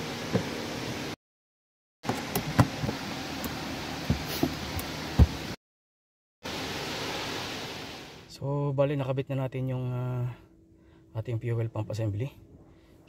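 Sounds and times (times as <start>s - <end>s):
steady background hum: 8.3s - 13.0s.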